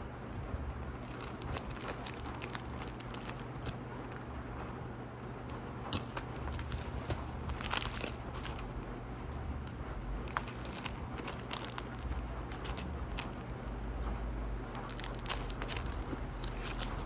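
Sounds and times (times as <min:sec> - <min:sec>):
steady low hum: 0:00.0 - 0:17.0
packaging crackling and rustling: 0:00.2 - 0:04.6, 0:05.4 - 0:17.0.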